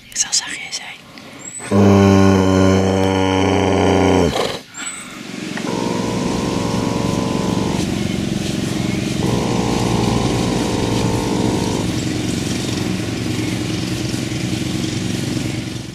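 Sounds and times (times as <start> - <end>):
foal snoring: 1.6 - 4.8, 5.6 - 13.0.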